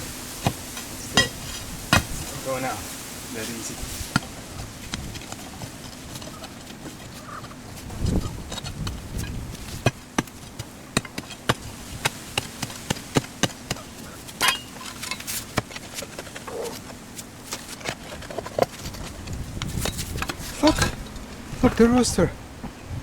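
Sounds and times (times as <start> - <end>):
crowbar scraping rock: 3.4 - 21.2.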